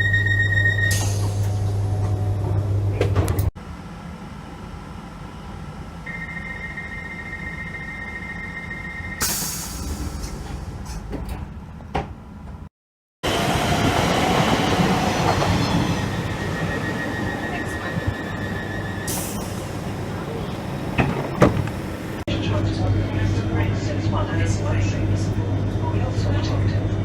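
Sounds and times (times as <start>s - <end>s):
train door warning tone: 6.1s - 10.3s, 15.2s - 22.2s
train running noise: 8.6s - 27.0s
doors closing with air burst: 19.0s - 22.3s.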